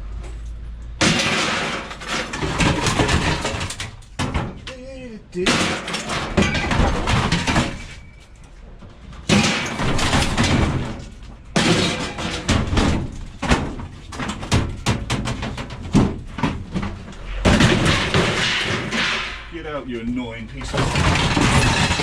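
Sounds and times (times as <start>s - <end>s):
scrap metal clattering and banging: 0.2s - 22.0s.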